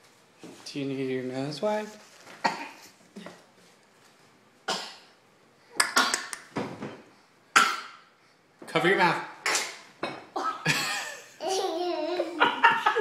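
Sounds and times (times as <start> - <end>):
child sneezing: 9.4 - 10.6.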